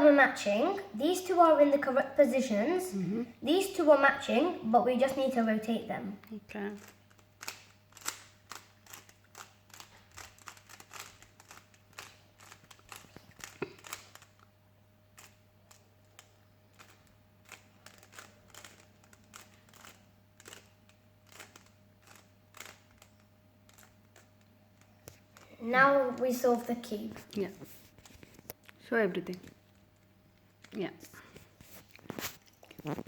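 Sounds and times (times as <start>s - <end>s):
puzzle cube clicking: 6.8s - 14.4s, 15.2s - 25.5s.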